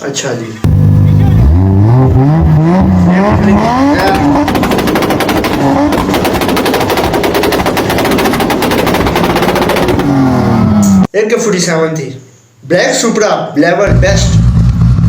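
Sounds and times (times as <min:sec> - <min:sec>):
car engine at high revs: 0:00.7 - 0:11.1
exhaust bangs: 0:00.7 - 0:11.1, 0:13.9 - 0:15.0.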